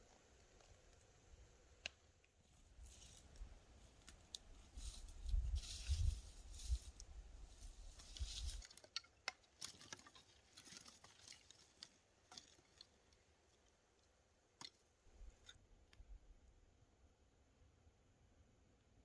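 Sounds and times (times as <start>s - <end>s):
faint rustling: 2.8s - 8.7s
small clicks and ticks: 7.9s - 16.1s.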